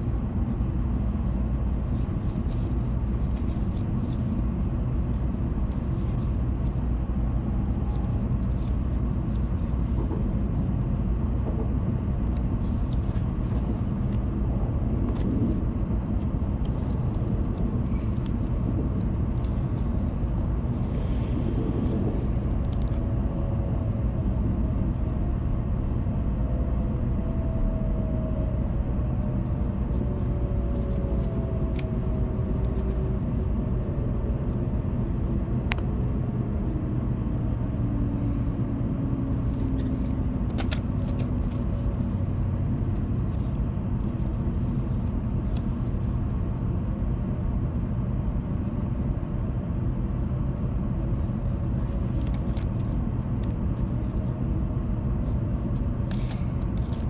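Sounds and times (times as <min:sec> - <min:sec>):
train cabin rumble: 0:00.0 - 0:46.9.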